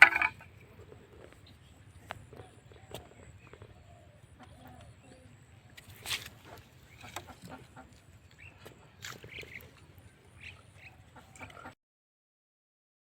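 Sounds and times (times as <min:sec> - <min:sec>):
fowl clucking and chirping: 0:10.3 - 0:11.8.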